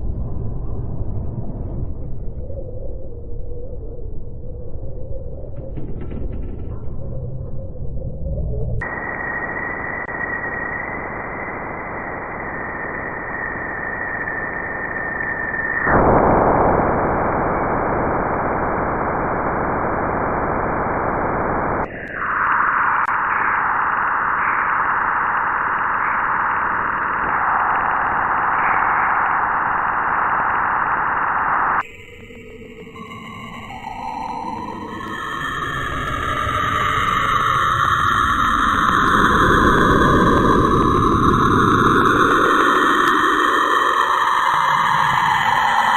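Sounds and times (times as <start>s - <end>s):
static-like hiss: 8.9s - 31.8s.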